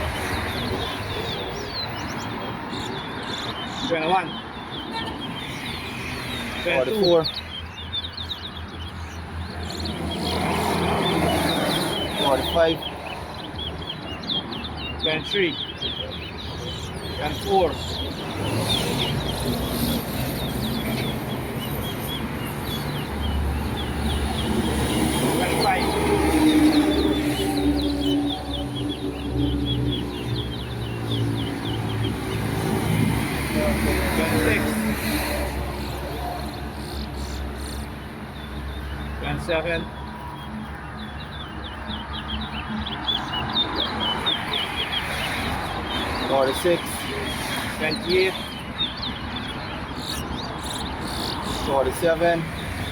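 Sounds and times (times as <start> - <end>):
bird chirping quickly: 0.0 - 52.9
finch whistled chirps: 39.8 - 52.7.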